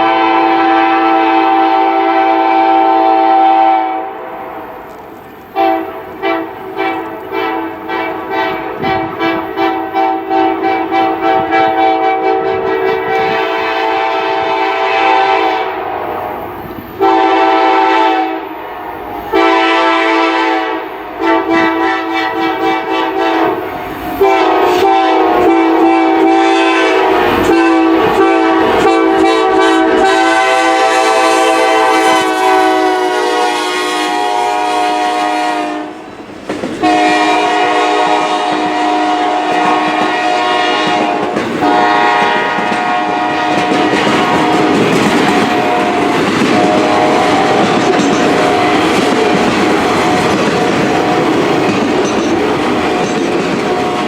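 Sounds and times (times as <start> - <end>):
locomotive air horn blasts: 0.0 - 36.1, 36.8 - 51.7.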